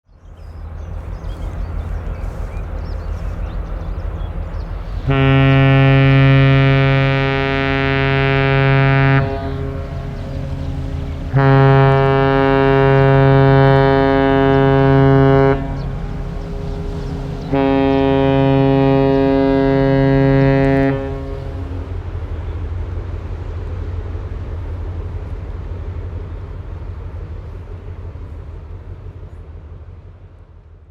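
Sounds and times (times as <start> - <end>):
low rumble: 0.4 - 24.4
deep ship horn blast: 1.2 - 22.0.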